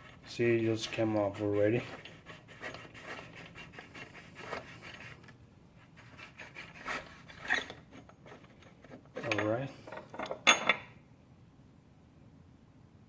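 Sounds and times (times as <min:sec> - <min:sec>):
metal scraping and rubbing: 0:00.0 - 0:10.3.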